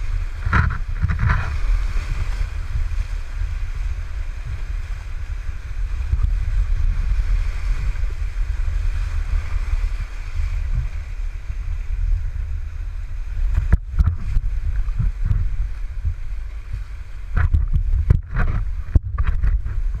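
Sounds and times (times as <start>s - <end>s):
wind buffeting microphone: 0.0s - 20.0s
irregular knocks and thumps: 0.4s - 1.5s, 13.5s - 16.2s, 17.3s - 20.0s.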